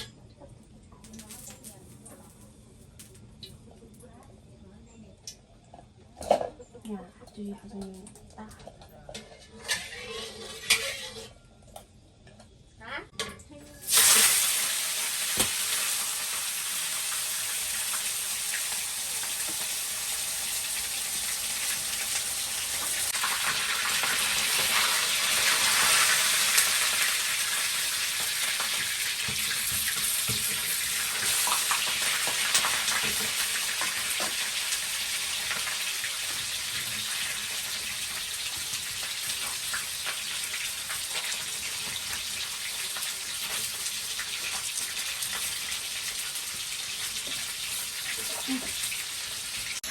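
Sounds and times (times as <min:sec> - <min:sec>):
oil crackles: 0:01.0 - 0:03.8
fish sizzling in oil: 0:13.7 - 0:49.9.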